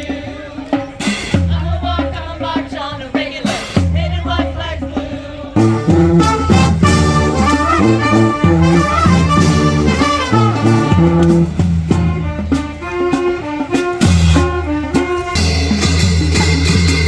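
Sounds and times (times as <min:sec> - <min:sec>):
brass band playing: 0:01.0 - 0:17.0
drum hits: 0:03.4 - 0:12.8.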